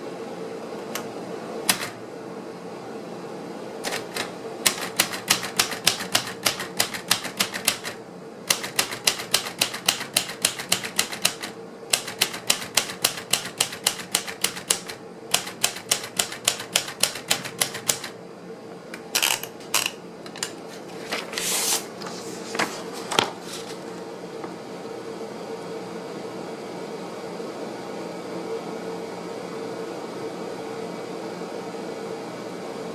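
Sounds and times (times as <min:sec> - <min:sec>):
faint steady hum: 0:00.0 - 0:32.9
typewriter key strikes: 0:03.8 - 0:18.1.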